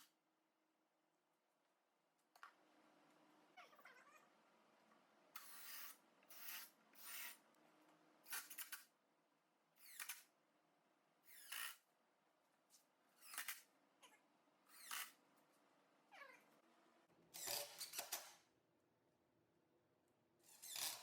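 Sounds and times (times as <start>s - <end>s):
cat meowing: 3.6s - 4.2s, 16.1s - 16.4s.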